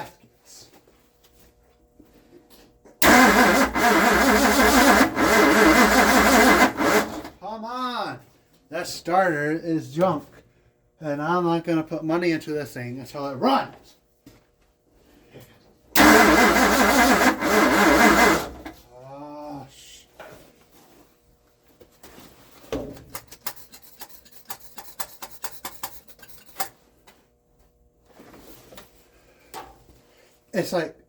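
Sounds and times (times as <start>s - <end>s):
engine starter cranking: 3.0s - 7.4s, 16.0s - 18.8s.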